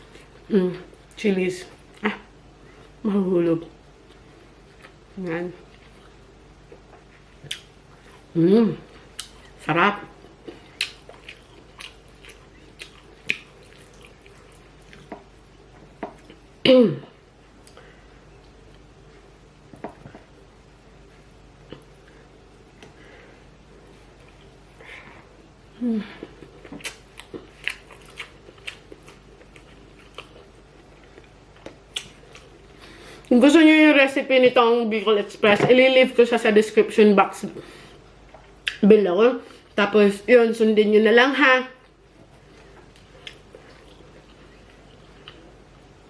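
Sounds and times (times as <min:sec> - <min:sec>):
person chewing food: 0:04.0 - 0:16.6, 0:17.5 - 0:33.3, 0:42.2 - 0:46.0.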